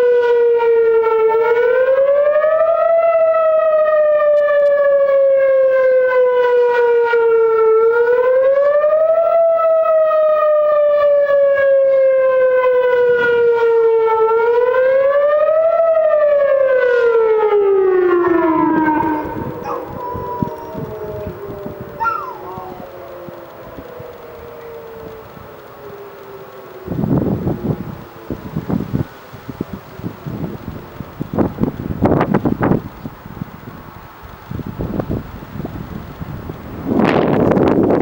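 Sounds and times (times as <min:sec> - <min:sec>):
warning siren wailing: 0:00.0 - 0:38.0.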